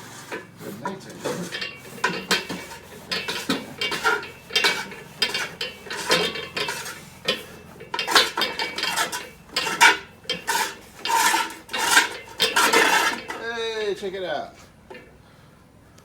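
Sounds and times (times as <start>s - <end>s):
metal tools clinking and scraping: 0.0s - 15.2s.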